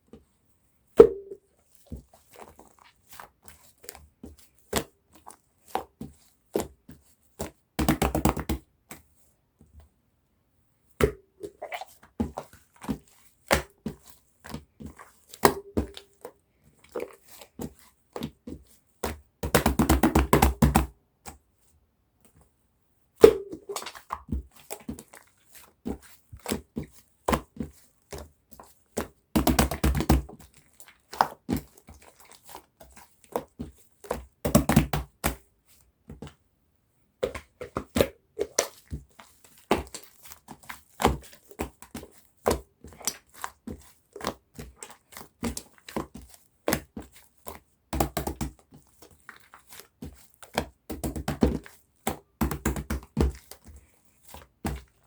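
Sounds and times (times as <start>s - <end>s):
slime bubbles popping: 11.1s - 11.9s, 23.2s - 24.1s.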